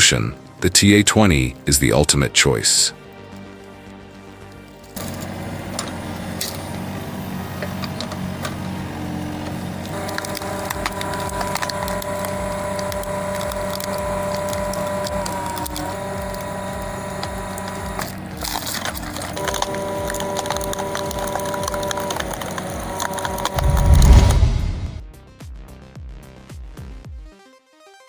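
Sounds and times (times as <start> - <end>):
wood-processing machine cracking wood: 3.3 - 24.3
motor whine: 4.8 - 25.0.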